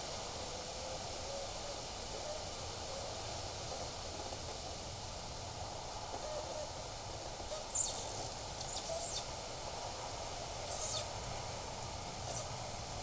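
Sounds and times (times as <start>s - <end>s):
outdoor background hiss: 0.0s - 13.0s.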